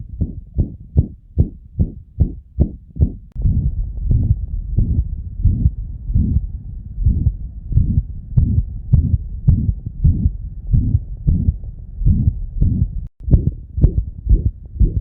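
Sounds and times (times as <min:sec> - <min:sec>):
heart murmur: 0:00.0 - 0:15.0
heartbeat through stethoscope: 0:00.0 - 0:15.0.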